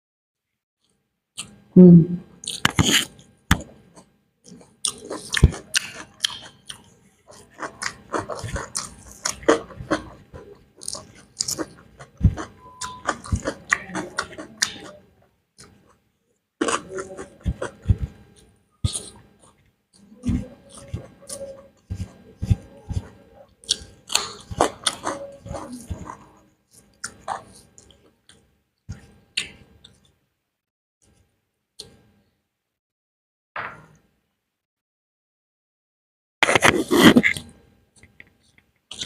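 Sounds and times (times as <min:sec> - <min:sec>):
person humming hmm: 0:01.8 - 0:02.3
close-miked chewing and mouth smacks: 0:04.0 - 0:15.0.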